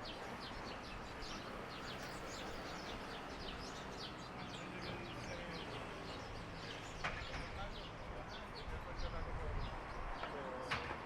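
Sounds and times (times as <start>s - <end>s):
small birds chirping: 0.0s - 10.7s.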